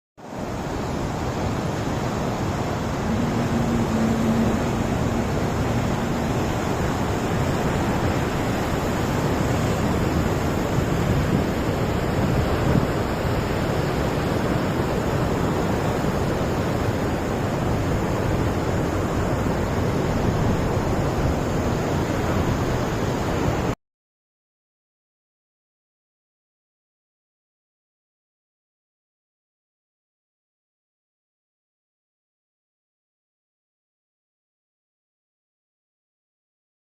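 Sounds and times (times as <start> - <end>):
sea surf: 0.2 - 23.8
wind: 0.2 - 23.8.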